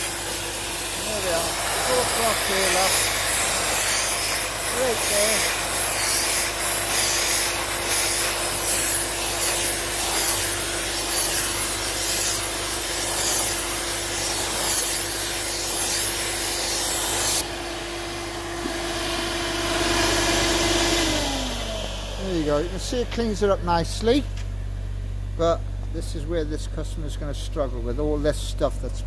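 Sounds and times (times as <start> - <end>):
sandblasting gun hissing: 0.0 - 17.4
steady motor hum: 0.0 - 29.0.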